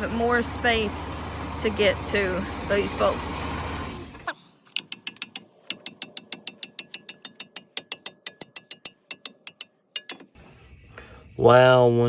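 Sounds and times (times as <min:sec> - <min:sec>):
socket ratchet clicking: 0:04.7 - 0:10.4.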